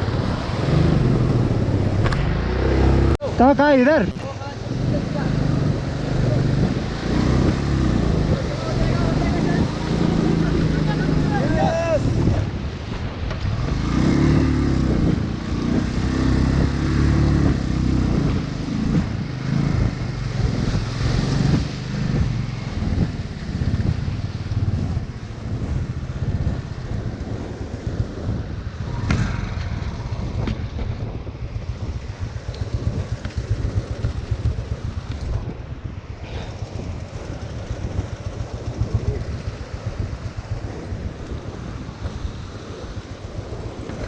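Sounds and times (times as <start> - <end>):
motorcycle engine revving: 0.0 - 12.6, 13.3 - 35.6, 36.4 - 44.0
stream rushing: 0.0 - 25.4.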